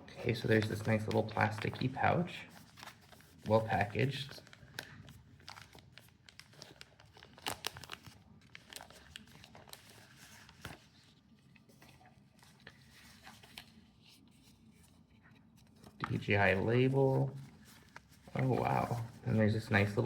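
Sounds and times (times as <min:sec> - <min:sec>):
plastic packaging crinkling: 0:00.2 - 0:11.1, 0:16.0 - 0:20.0.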